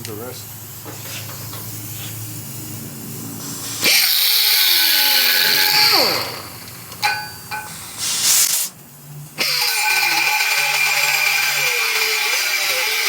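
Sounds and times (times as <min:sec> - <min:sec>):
brief hissing burst: 0:03.4 - 0:04.4, 0:07.7 - 0:08.8
angle grinder cutting metal: 0:03.5 - 0:08.4, 0:09.4 - 0:13.0.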